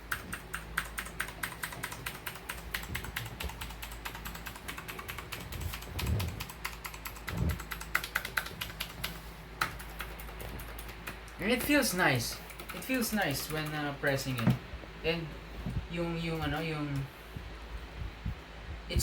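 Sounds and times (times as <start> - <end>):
mechanical keyboard clicking: 0.0 - 14.6
dull low thumps: 7.2 - 7.6, 14.4 - 15.9, 17.4 - 19.0.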